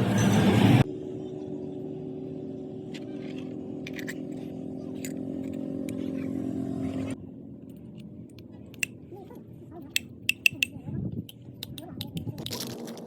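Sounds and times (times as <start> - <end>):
light metallic clicks: 9.9 - 12.4.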